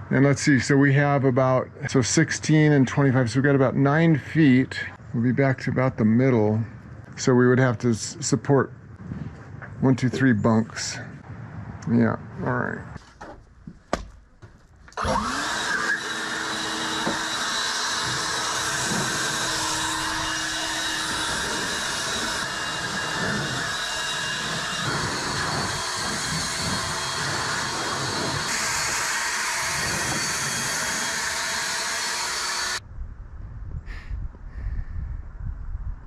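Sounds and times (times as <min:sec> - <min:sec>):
leaf blower rushing air: 0:15.0 - 0:32.8.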